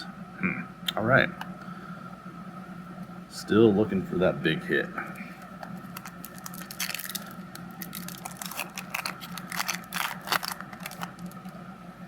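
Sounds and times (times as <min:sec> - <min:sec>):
wrapper crinkling and tearing: 0:05.7 - 0:11.6.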